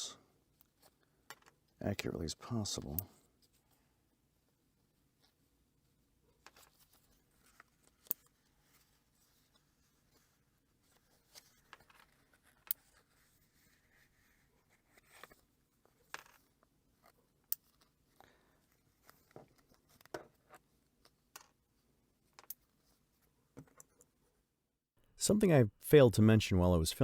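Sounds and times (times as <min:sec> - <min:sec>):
book pages rustling: 0:06.4 - 0:16.1.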